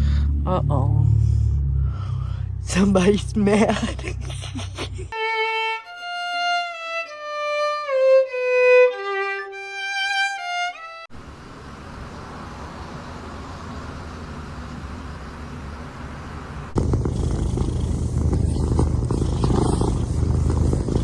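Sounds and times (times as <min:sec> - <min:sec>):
low rumble: 0:00.0 - 0:05.2
solo violin melody: 0:05.2 - 0:11.1.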